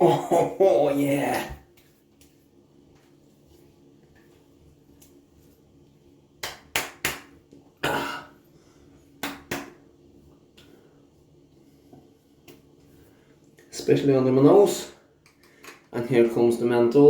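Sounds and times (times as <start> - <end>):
palms slapping a face: 6.4 - 7.6, 9.2 - 9.8.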